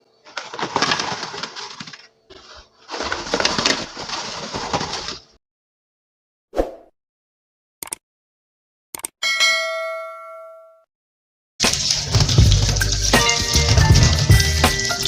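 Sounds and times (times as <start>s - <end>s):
oil sizzling and crackling: 11.6s - 15.0s.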